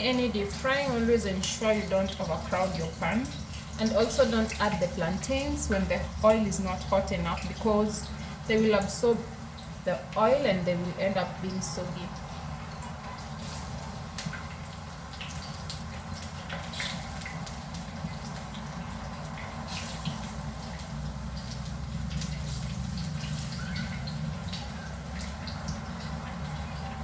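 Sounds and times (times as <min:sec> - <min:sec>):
oil sizzling with pops: 0:00.0 - 0:27.0.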